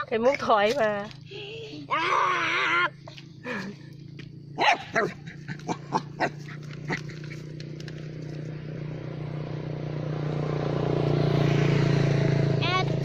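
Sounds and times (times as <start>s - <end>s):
low engine hum: 0.0s - 13.0s
dog barking: 4.6s - 6.5s.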